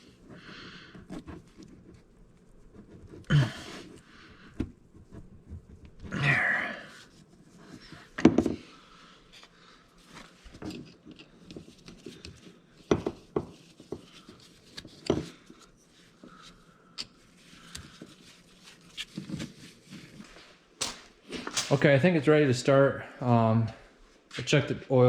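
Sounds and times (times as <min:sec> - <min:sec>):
tools knocking and clattering: 0:20.8 - 0:21.8.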